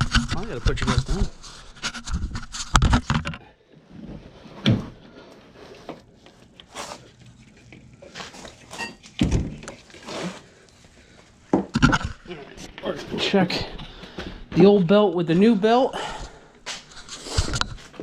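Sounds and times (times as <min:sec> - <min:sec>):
tools being handled and set down: 0:11.6 - 0:12.3.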